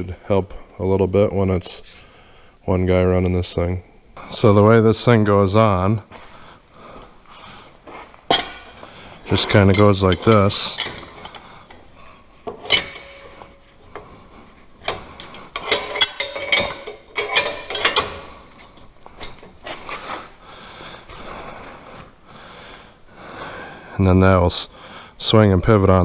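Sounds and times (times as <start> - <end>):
steel pieces clinking and scraping: 8.3 - 20.1.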